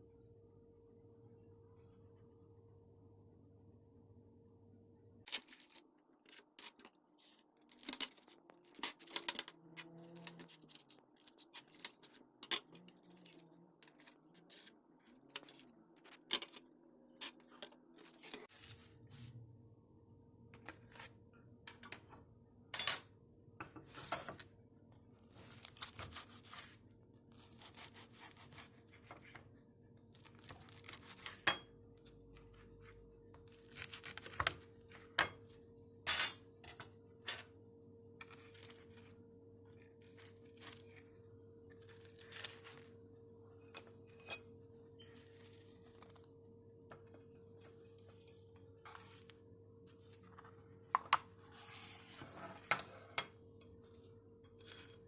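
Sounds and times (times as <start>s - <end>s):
cutlery and dishes clinking: 5.3s - 16.6s, 17.2s - 18.5s
rasping scrapes: 5.3s - 16.6s, 17.2s - 18.5s.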